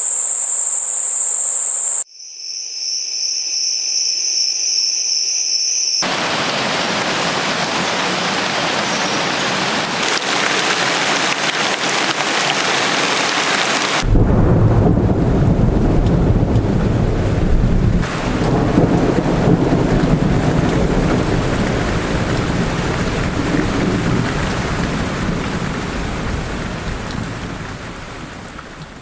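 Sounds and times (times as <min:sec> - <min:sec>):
deep thunder rumble: 0:06.0 - 0:28.8
heavy rain: 0:06.0 - 0:29.0.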